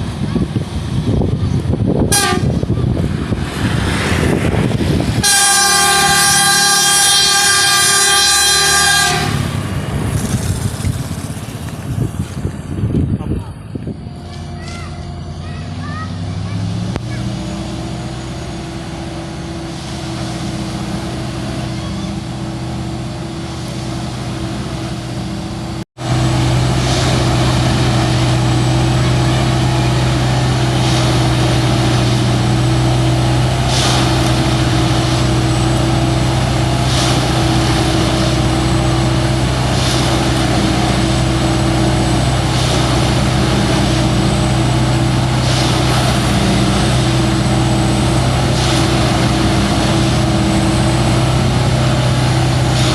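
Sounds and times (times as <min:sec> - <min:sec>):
diesel engine running: 0:00.0 - 0:52.9.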